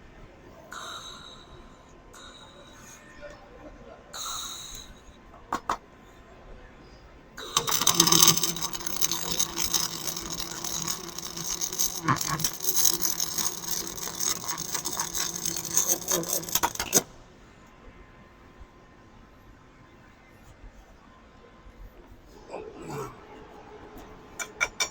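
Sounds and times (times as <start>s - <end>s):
welding arc crackling: 7.6s - 17.1s.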